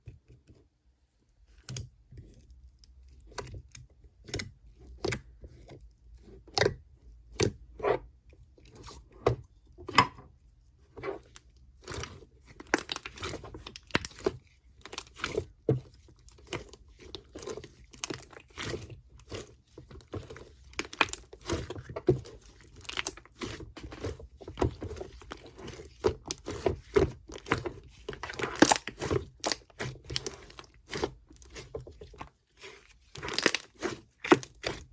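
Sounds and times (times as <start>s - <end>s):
slime crackling and popping: 20.0s - 34.9s.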